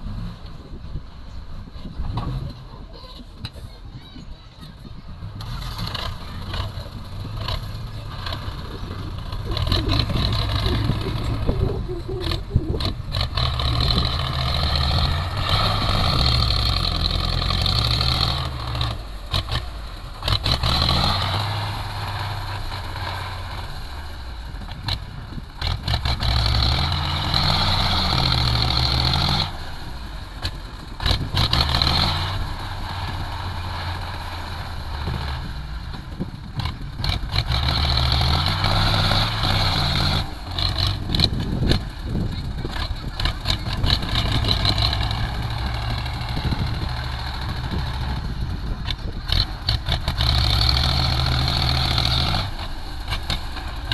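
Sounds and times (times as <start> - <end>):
heavy machinery diesel engine: 0.0 - 53.9.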